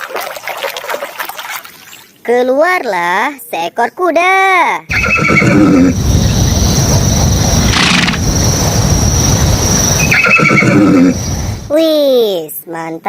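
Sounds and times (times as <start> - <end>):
horse neighing: 4.9 - 6.0, 10.0 - 11.2
loud low rumbling: 4.9 - 11.7
faint high whine: 4.9 - 11.8.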